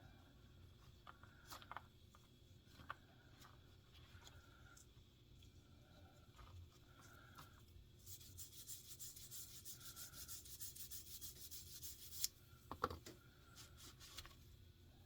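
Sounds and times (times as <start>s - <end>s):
rapid rubbing strokes: 8.0s - 12.3s.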